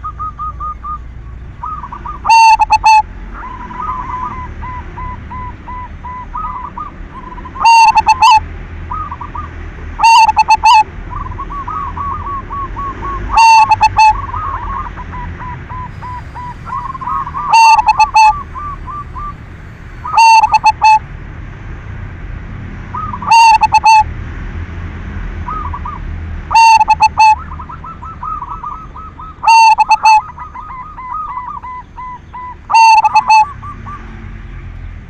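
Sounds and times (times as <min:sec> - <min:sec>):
dove cooing: 0:00.0 - 0:21.1, 0:23.0 - 0:24.1, 0:25.5 - 0:34.2.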